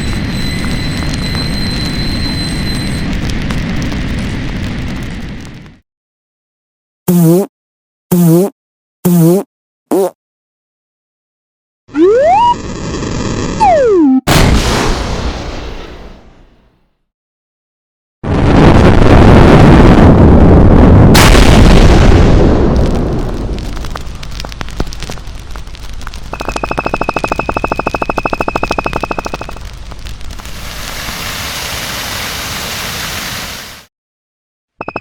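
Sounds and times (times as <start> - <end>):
eruption boom and rumble: 0.0 - 5.8, 14.3 - 16.7, 18.3 - 26.7
sharp crack: 14.3 - 16.8, 21.2 - 26.6.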